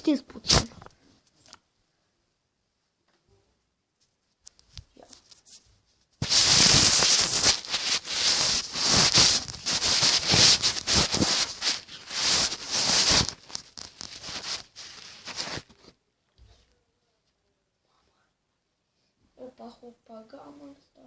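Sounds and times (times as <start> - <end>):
packaging rustling and crinkling: 6.2 - 15.9.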